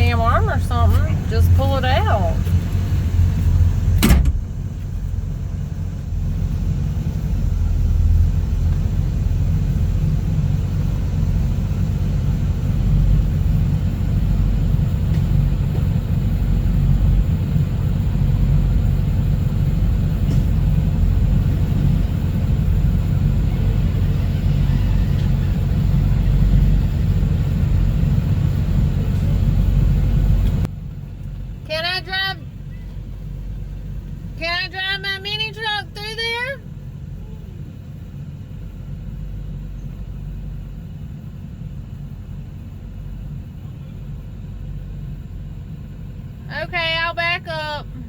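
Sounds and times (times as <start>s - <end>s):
vehicle engine rumbling: 0.0s - 48.0s.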